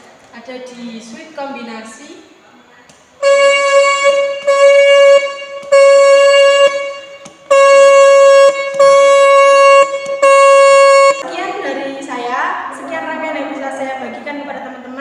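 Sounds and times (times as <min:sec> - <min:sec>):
car horn blasts: 0:03.2 - 0:11.2.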